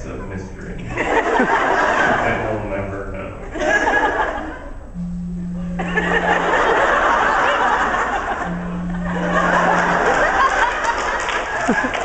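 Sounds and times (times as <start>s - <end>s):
audience laughing and chattering: 0.0s - 2.4s, 3.4s - 4.8s, 5.6s - 12.0s
phone vibrating: 4.9s - 10.8s.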